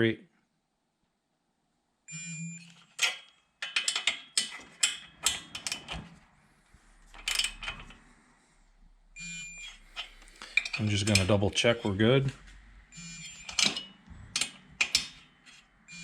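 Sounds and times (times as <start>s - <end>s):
torque wrench beep: 2.1s - 3.0s, 9.2s - 11.2s, 12.9s - 13.9s.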